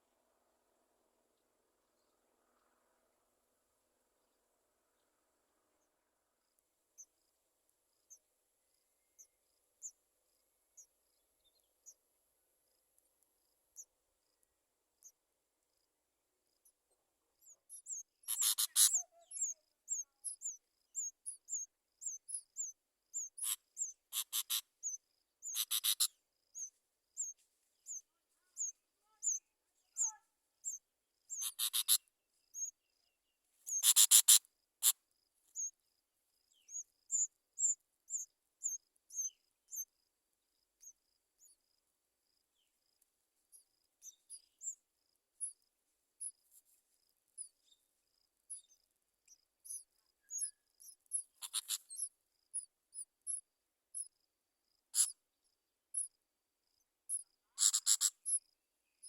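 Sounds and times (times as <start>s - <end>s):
small birds high chirps: 4.8s - 7.3s, 7.9s - 12.0s, 13.4s - 14.4s, 15.0s - 15.9s, 16.5s - 59.0s
harsh bursts of rapid bird notes: 18.3s - 19.2s, 23.4s - 24.6s, 25.5s - 26.1s, 31.3s - 32.0s, 33.7s - 34.4s, 51.4s - 51.9s, 57.6s - 58.2s.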